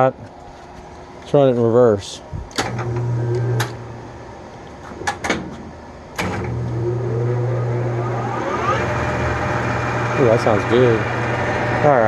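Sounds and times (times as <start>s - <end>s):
lathe motor humming and whining: 6.3s - 12.0s.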